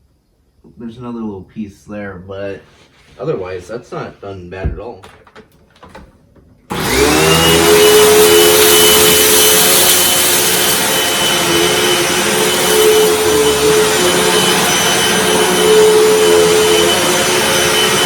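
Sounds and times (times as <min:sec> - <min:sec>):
vacuum cleaner running: 0:06.7 - 0:18.0.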